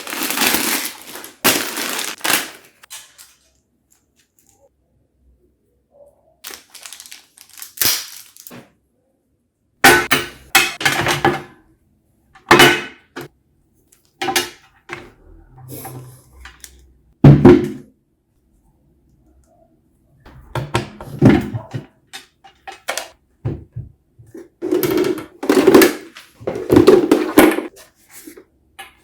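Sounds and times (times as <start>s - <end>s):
cardboard packaging rustling: 0.0s - 4.5s, 6.4s - 8.6s.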